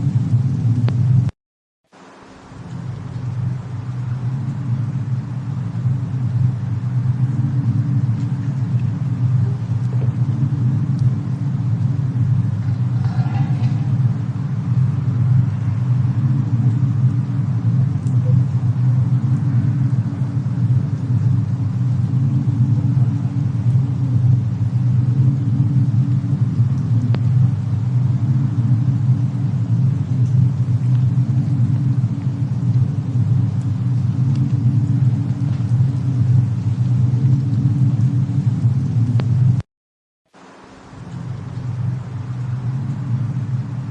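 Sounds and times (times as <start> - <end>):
faint fire crackles: 0.0 - 1.3, 1.9 - 39.6, 40.3 - 43.9
steady low rumble: 0.0 - 39.7, 40.4 - 43.9.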